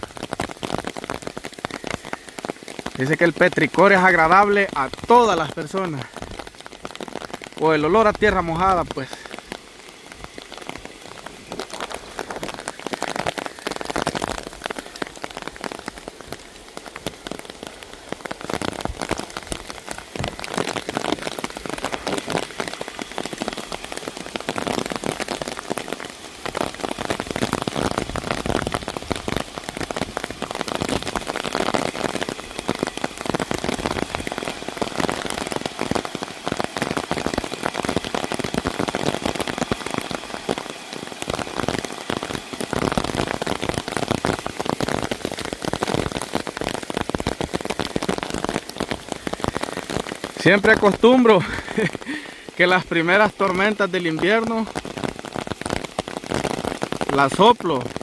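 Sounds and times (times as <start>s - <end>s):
rain pattering on the ground: 0.0s - 58.0s.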